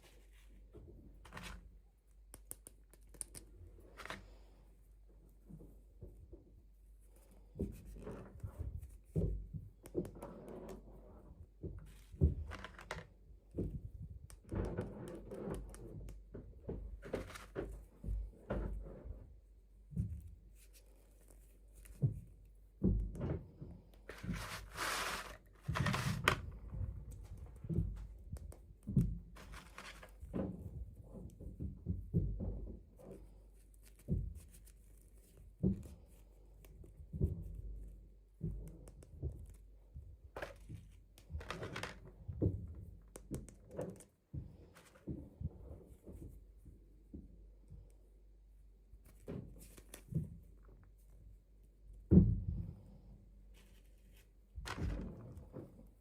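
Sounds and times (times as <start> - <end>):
soft plastic knocks and taps: 7.2 - 19.3, 19.9 - 48.2
packaging rustling and tearing: 24.1 - 26.4.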